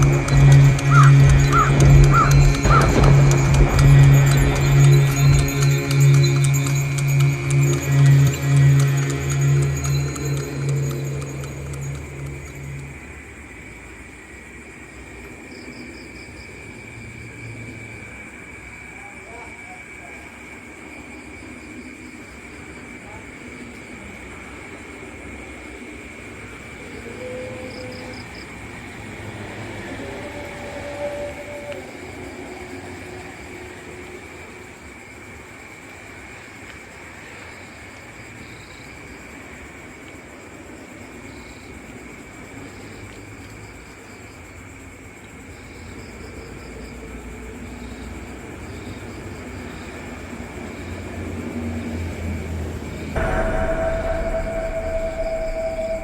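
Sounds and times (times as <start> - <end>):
high whine: 0.0 - 13.4, 53.2 - 56.0
held drone tones: 0.0 - 13.5, 53.2 - 56.0
faint high chirps: 53.2 - 56.0.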